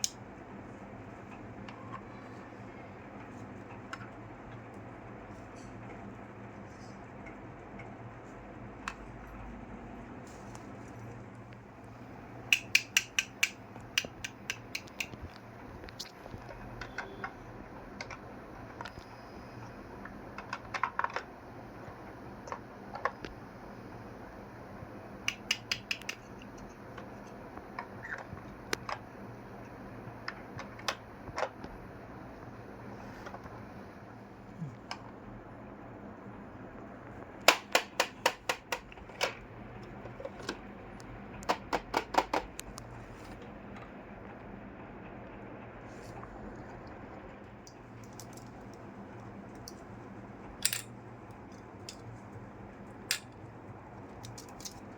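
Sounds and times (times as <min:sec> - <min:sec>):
toy kitchen pieces clicking: 0:54.2 - 0:54.9.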